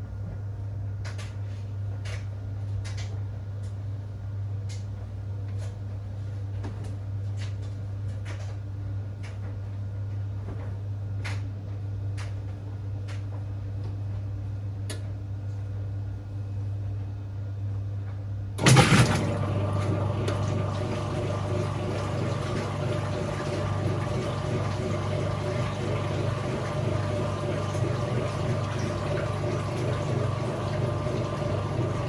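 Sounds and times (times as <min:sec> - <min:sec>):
washing machine motor hum: 0:15.9 - 0:32.0.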